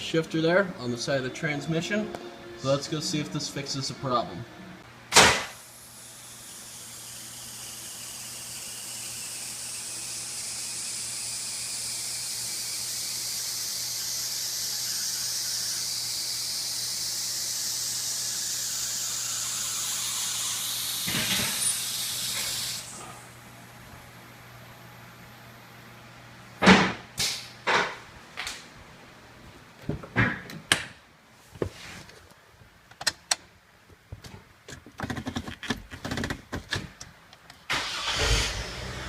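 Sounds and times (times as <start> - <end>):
hydraulic valve hissing: 5.6 - 23.0, 37.7 - 38.9.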